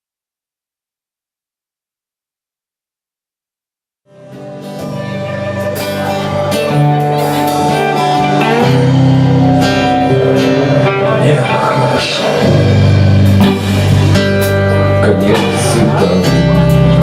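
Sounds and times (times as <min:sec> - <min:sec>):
live rock band with guitar: 0:04.1 - 0:17.0.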